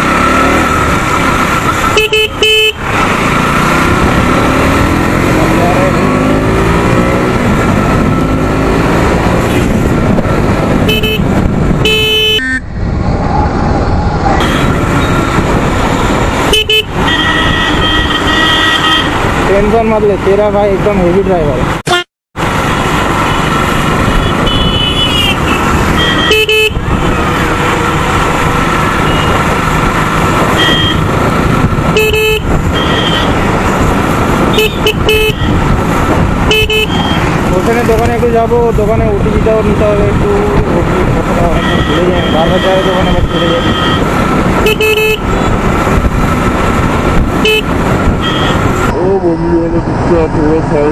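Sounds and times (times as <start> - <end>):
motorcycle engine accelerating: 0.0 - 11.8, 22.5 - 50.9
road noise: 0.0 - 50.9
vehicle horn: 1.9 - 2.8, 10.8 - 12.6, 14.4 - 14.8, 16.4 - 19.2, 24.1 - 26.8, 30.6 - 31.1, 31.9 - 33.4, 34.5 - 35.6, 36.5 - 37.2, 41.5 - 45.5, 47.4 - 48.7
distant horns: 16.4 - 19.3, 41.4 - 45.6, 47.4 - 48.9.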